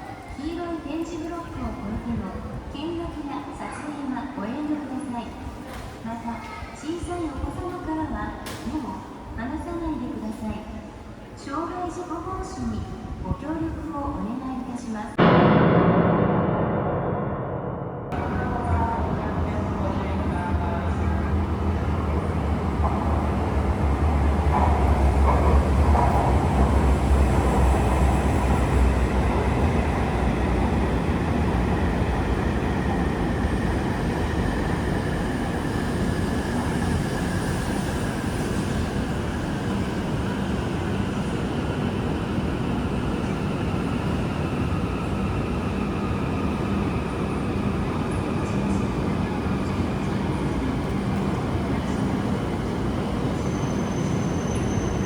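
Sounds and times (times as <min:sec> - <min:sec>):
train rail noise rumble: 0:18.1 - 0:55.0.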